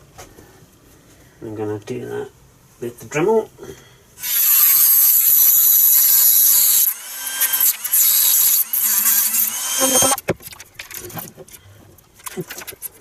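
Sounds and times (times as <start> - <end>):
rotary tool high-pitched whine: 4.2 - 10.2.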